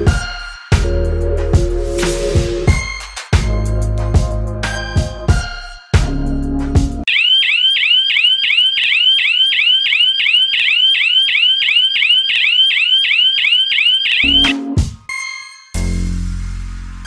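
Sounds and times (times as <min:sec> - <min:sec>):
electronic alarm siren yelping: 0:07.1 - 0:14.8.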